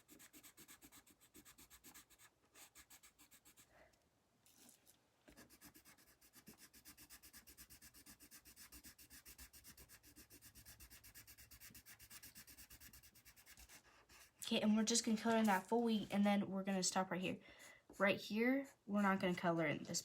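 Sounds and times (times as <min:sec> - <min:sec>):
pencil scratching on paper: 0:00.0 - 0:03.7, 0:05.3 - 0:14.4.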